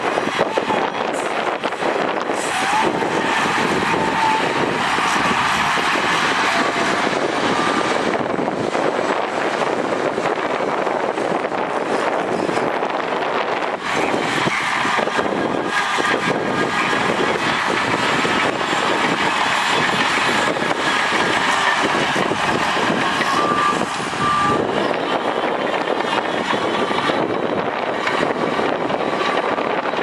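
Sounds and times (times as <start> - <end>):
diesel machinery running: 0.0 - 30.0
short beeps: 23.3 - 24.7.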